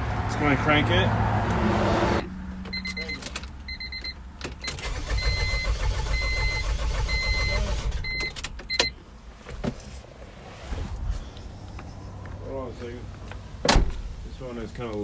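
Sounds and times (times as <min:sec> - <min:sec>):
car engine cranking by starter: 0:04.6 - 0:08.7.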